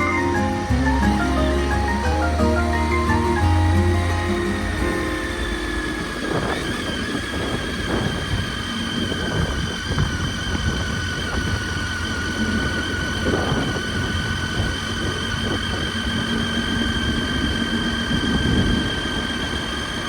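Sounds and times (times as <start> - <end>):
thin whine falling in pitch: 0.0 - 11.7
motorcycle engine rumble: 0.0 - 20.0
wind noise: 0.0 - 20.0.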